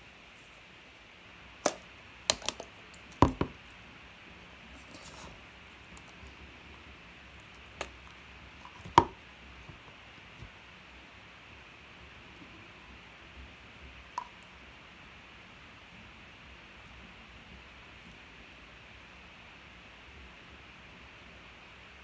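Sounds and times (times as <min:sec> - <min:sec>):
plastic clicks and knocks: 0:01.6 - 0:03.8, 0:07.5 - 0:09.8
soft rustle: 0:02.7 - 0:09.0.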